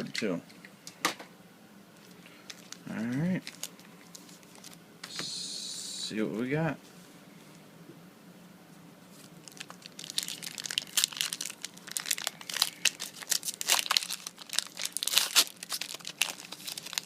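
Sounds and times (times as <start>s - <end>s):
foil wrapper tearing and crinkling: 2.5s - 4.8s, 9.3s - 17.0s.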